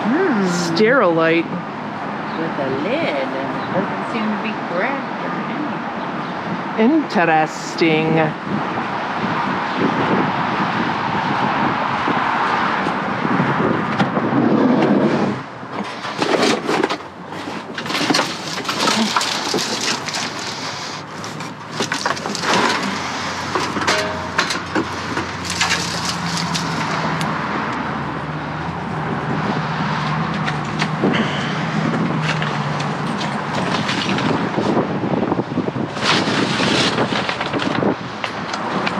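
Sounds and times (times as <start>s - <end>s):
outdoor noise: 0.0s - 38.9s
debris knocking in dumpster: 21.4s - 27.2s.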